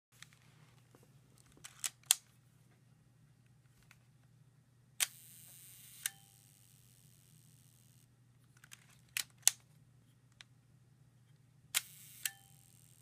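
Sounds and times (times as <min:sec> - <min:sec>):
faint steady whirring: 0:02.3 - 0:13.0
camera shutter clicks: 0:05.0 - 0:07.2, 0:11.8 - 0:13.0.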